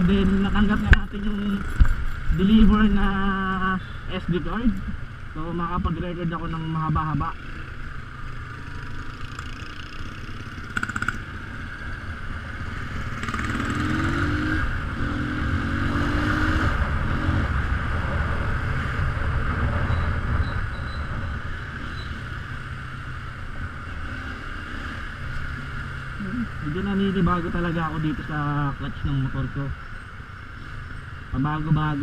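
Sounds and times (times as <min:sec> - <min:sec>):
motorcycle engine accelerating: 0:06.6 - 0:28.6.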